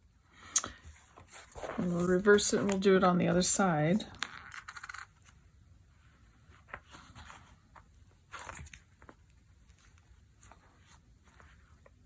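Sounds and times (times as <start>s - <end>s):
leather rustling: 6.1s - 12.0s.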